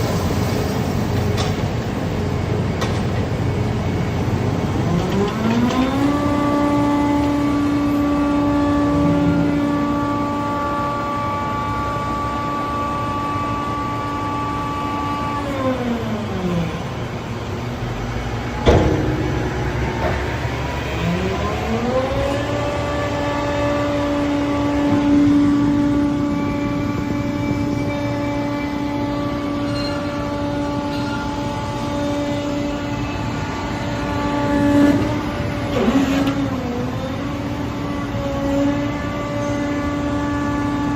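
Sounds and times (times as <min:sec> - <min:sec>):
baler machine whining: 0:04.7 - 0:40.9
loud metallic bang: 0:07.8 - 0:11.3, 0:18.5 - 0:21.5.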